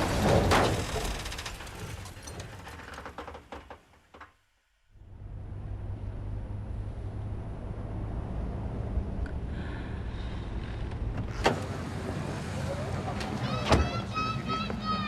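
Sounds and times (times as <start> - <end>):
car crash impact: 0.0 - 2.2
debris clicking and rattling: 0.0 - 3.8
low steady rumble: 4.8 - 12.9.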